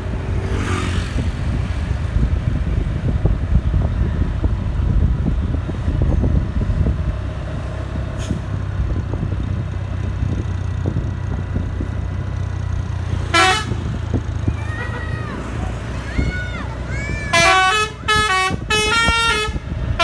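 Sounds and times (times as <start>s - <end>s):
bus engine idling: 1.2s - 20.0s.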